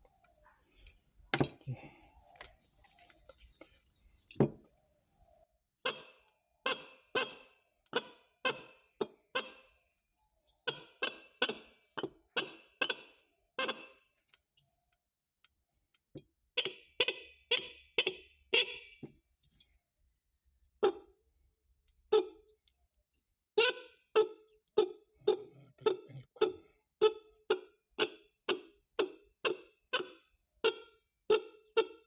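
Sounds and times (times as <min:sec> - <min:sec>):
motorcycle horn beeps: 0:06.7 - 0:08.8, 0:12.4 - 0:14.0, 0:16.6 - 0:19.0.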